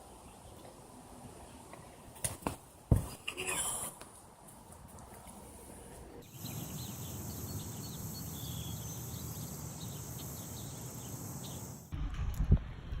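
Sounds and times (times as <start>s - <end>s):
bird chirps: 6.2s - 11.9s
insect chorus: 6.2s - 11.9s.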